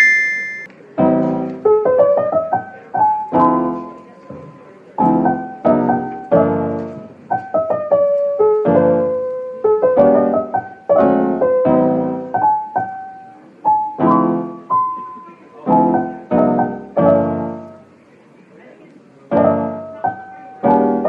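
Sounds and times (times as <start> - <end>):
piano music: 0.0 - 18.0, 19.3 - 21.0.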